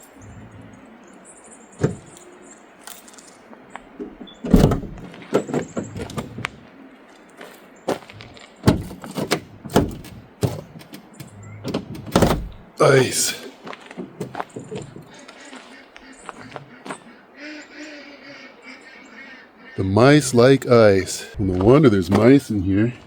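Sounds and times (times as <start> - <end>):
objects knocking inside a van: 4.0 - 6.6, 7.9 - 12.6, 13.9 - 15.1.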